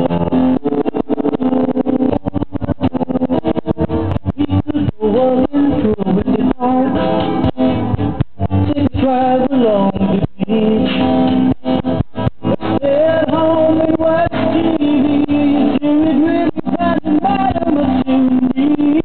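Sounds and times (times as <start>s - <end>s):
guitar accompaniment: 0.0s - 19.0s
person singing: 4.1s - 11.3s, 12.6s - 19.0s.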